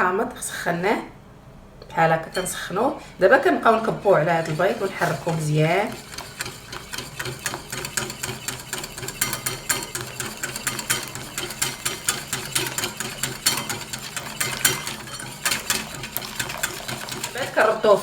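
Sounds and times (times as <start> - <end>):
steady hum: 1.9 - 18.0
whisk clicking against bowl: 3.7 - 18.0.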